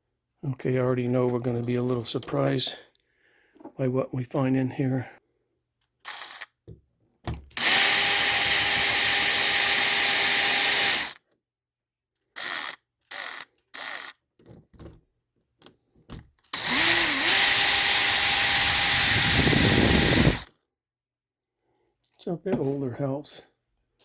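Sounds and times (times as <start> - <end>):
drill trigger clicks: 6.1 - 6.5, 7.6 - 11.2, 12.4 - 14.2, 16.6 - 20.5
power drill running: 7.6 - 11.2, 16.6 - 20.5.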